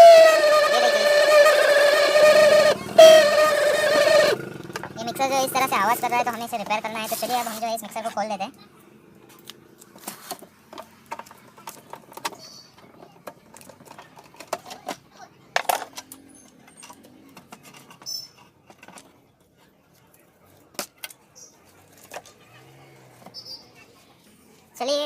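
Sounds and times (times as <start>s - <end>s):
parts clicking and clinking: 15.6s - 19.2s.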